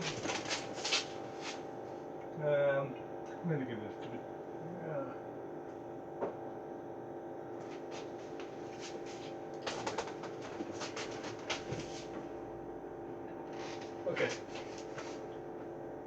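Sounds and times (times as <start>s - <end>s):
appliance humming: 0.0s - 16.0s.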